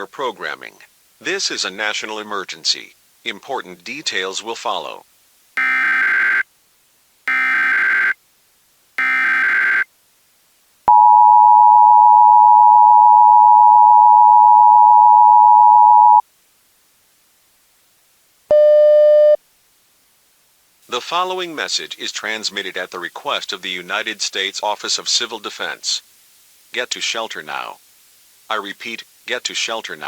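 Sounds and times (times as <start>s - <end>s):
two-tone attention signal: 10.9s - 16.2s.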